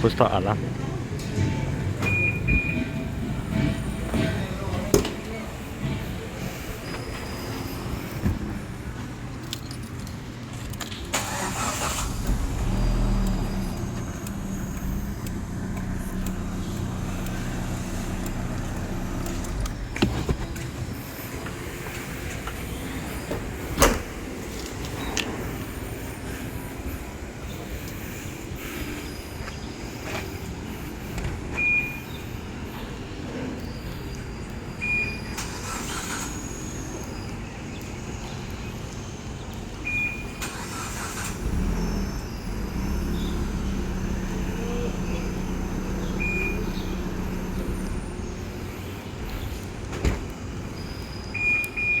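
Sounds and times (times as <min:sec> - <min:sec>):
car engine starting and running: 0:00.0 - 0:09.0, 0:10.6 - 0:33.1, 0:34.8 - 0:37.2, 0:39.8 - 0:52.0
car alarm beeps: 0:01.4 - 0:03.7, 0:31.5 - 0:32.2, 0:34.8 - 0:37.3, 0:39.8 - 0:48.4, 0:50.9 - 0:52.0.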